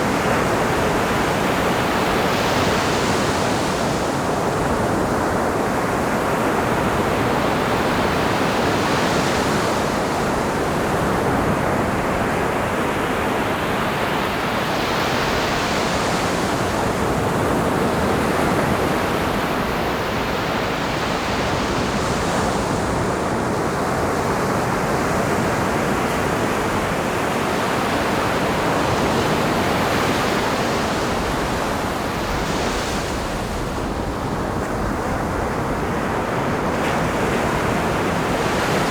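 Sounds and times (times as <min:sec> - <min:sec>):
ocean waves crashing: 0:24.6 - 0:38.9.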